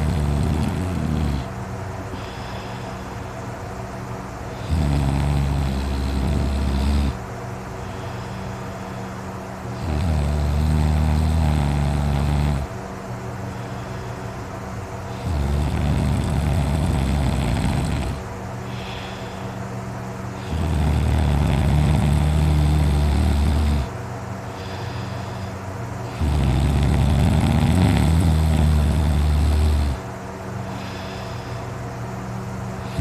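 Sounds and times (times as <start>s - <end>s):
person snoring loudly: 0.0s - 1.5s, 4.6s - 7.2s, 9.8s - 12.7s, 15.1s - 19.3s, 20.4s - 23.9s, 26.0s - 30.0s, 32.8s - 33.0s.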